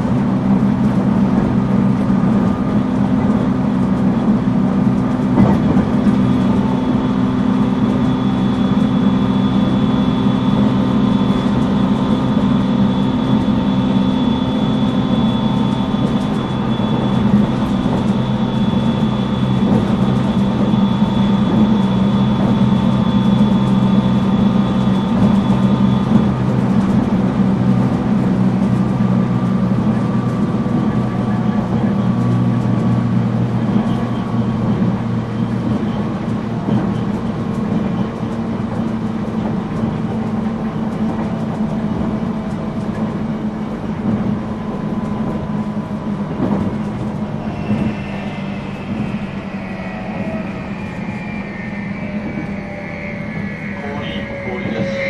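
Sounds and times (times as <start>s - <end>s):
train motor and gear hum: 0.0s - 55.0s
thin high whine: 46.7s - 55.0s.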